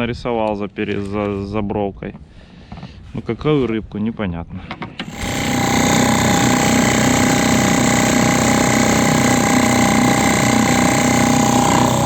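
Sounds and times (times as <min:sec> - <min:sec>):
outboard motor running: 0:05.0 - 0:12.0.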